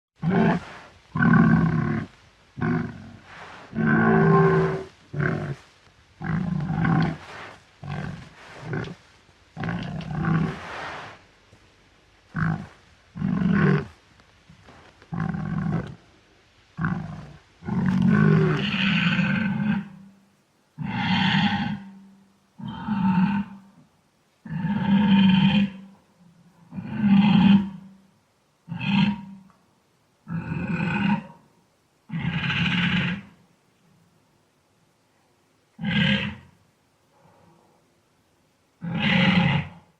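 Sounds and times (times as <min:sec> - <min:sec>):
wild boar grunting: 0:00.2 - 0:11.2, 0:12.3 - 0:14.0, 0:15.1 - 0:16.0, 0:16.8 - 0:20.0, 0:20.8 - 0:22.0, 0:22.6 - 0:23.7, 0:24.4 - 0:25.9, 0:26.6 - 0:28.0, 0:28.6 - 0:29.5, 0:30.2 - 0:31.5, 0:32.1 - 0:33.4, 0:35.8 - 0:36.6, 0:38.8 - 0:39.9.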